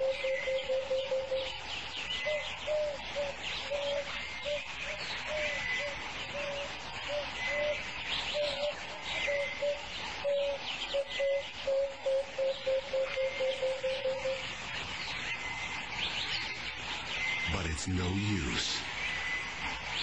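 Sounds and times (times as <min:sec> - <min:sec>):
bird low hooting: 0:00.0 - 0:01.6, 0:02.2 - 0:14.5.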